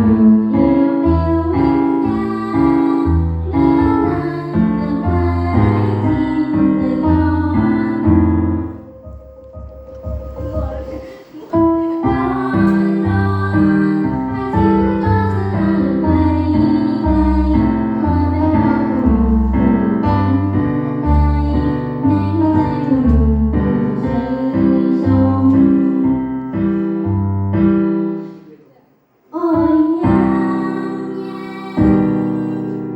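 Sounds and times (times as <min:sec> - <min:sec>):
piano or keyboard: 0:00.0 - 0:28.6, 0:29.3 - 0:32.9
woman singing pop song: 0:11.8 - 0:26.1, 0:29.3 - 0:32.9.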